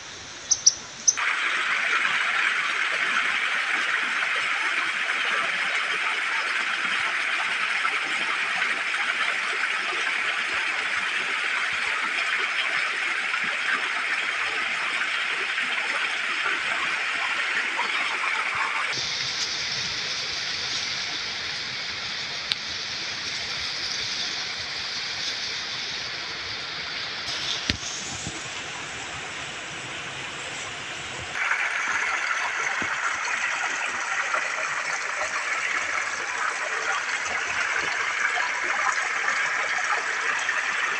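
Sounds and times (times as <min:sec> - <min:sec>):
jungle ambience: 0:00.0 - 0:03.4, 0:15.9 - 0:40.9.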